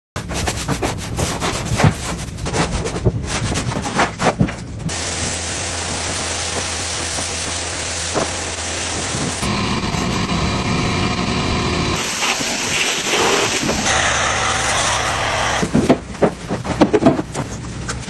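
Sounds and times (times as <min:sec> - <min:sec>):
pressure washer spraying water: 0:04.9 - 0:15.7.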